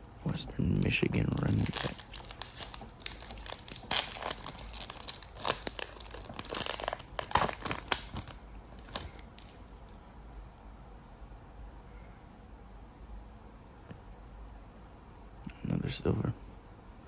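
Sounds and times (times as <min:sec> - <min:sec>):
cards rustling: 0:00.2 - 0:09.6
foil wrapper crinkling: 0:00.2 - 0:09.7.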